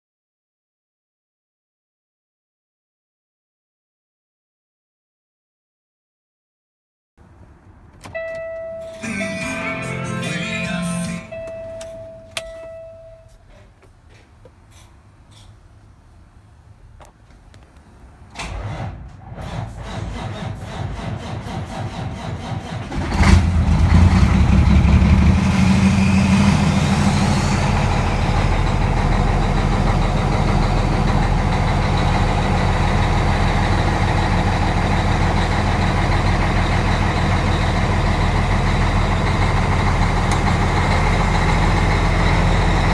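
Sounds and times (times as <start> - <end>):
diesel engine idling: 8.4 - 13.3, 19.2 - 42.9.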